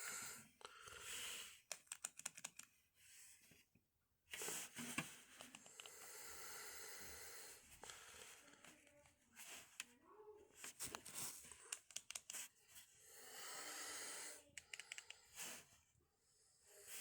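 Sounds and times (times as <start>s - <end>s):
faint handling clicks: 1.7s - 2.8s, 10.6s - 12.5s, 14.6s - 15.2s.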